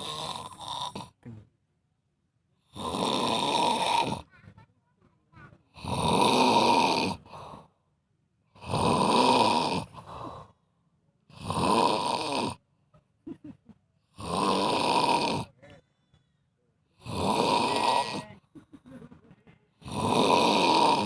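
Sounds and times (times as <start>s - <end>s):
person snoring: 0.0s - 1.3s, 2.6s - 4.3s, 5.7s - 7.7s, 8.6s - 10.6s, 11.3s - 12.6s, 14.1s - 15.6s, 16.9s - 18.4s, 19.8s - 21.0s.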